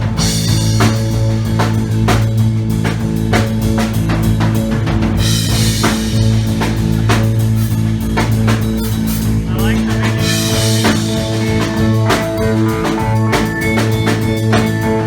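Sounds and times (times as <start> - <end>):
heavy drum beat: 0.0 - 15.0
low droning bass and guitar: 0.0 - 15.0
rock band playing: 0.0 - 15.0.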